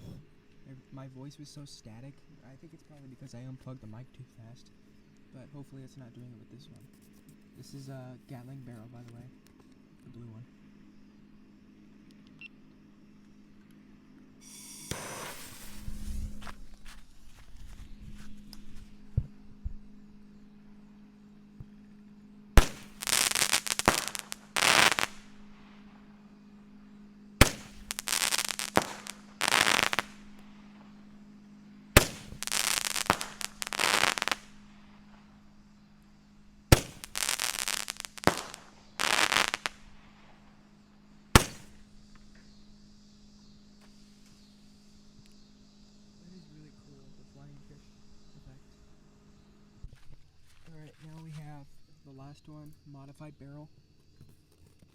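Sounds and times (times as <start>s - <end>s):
firework hissing: 14.4s - 17.6s, 22.6s - 25.6s, 27.4s - 31.1s, 31.9s - 35.6s, 36.4s - 40.5s, 41.3s - 42.1s
roman candle pops: 22.6s - 25.3s, 27.4s - 30.2s, 32.0s - 34.5s, 36.7s - 39.8s, 41.4s - 41.9s.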